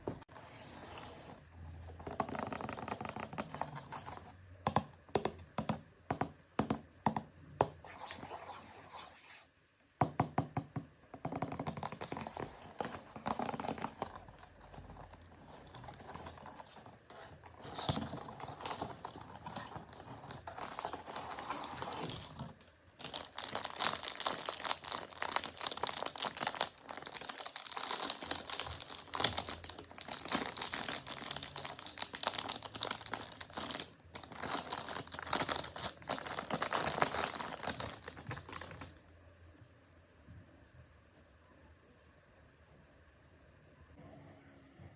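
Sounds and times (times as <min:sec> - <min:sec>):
packaging crinkling and rustling: 0:01.9 - 0:04.4, 0:11.5 - 0:39.0.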